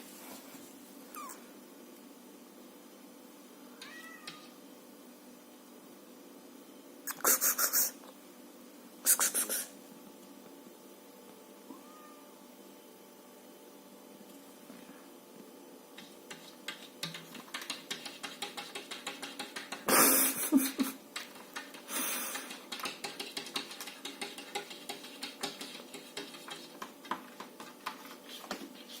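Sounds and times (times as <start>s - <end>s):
cat tapping on window glass: 16.0s - 19.9s, 20.7s - 28.6s.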